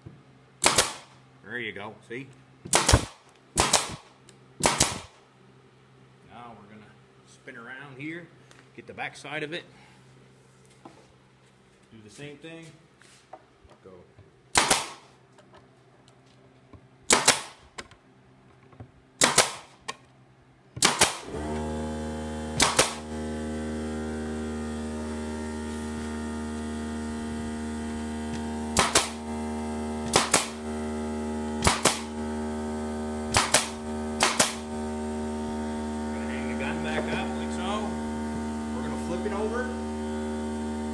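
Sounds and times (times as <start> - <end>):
nail gun firing into wood: 0.6 - 1.2, 2.7 - 5.2, 14.5 - 15.2, 17.1 - 17.9, 19.2 - 20.0, 20.8 - 21.7, 22.6 - 23.2, 28.3 - 29.3, 30.0 - 30.8, 31.6 - 32.4, 33.3 - 34.8
air compressor humming: 20.8 - 40.9.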